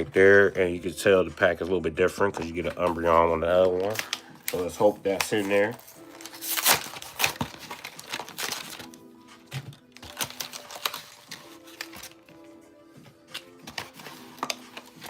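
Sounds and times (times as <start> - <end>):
background music: 0.0 - 15.0
card packaging crinkling: 2.6 - 12.4, 13.2 - 15.0.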